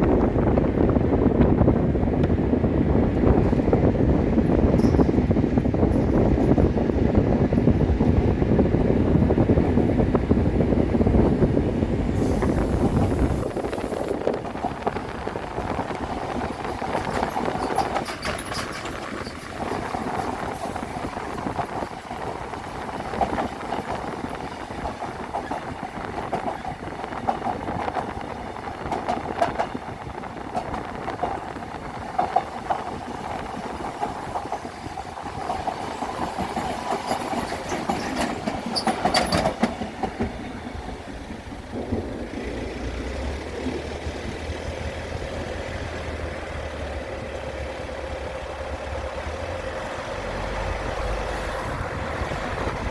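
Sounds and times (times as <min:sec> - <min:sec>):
electric train running on bridge: 0:00.0 - 0:52.9
wind on microphone: 0:00.0 - 0:52.9
train wheel clicks: 0:12.2 - 0:52.9.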